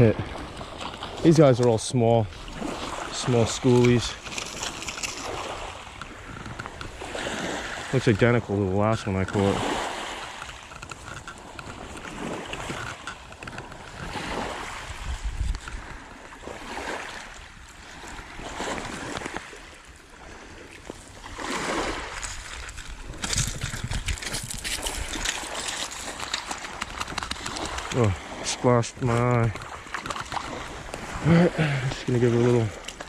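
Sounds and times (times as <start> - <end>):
shallow surf washing: 0.0 - 33.0
water splashing close by: 0.0 - 33.0
wind on microphone: 9.2 - 19.5, 21.3 - 31.5.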